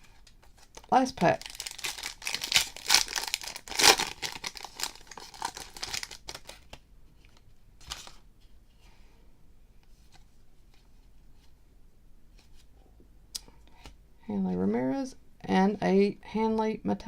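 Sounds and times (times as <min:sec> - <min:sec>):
cards rustling and clicking: 0:00.0 - 0:08.2
foil wrapper crinkling and tearing: 0:00.5 - 0:06.7.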